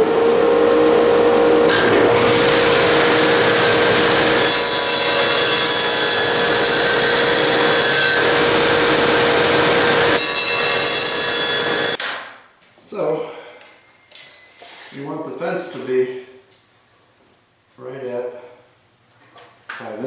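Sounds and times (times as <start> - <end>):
table saw cutting wood: 0.0 - 12.0.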